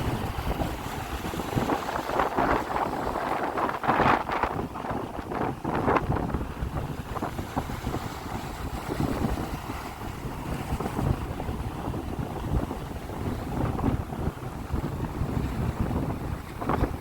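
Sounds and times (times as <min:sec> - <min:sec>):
sea waves washing on shore: 0:00.0 - 0:17.0
wind buffeting microphone: 0:00.0 - 0:17.0.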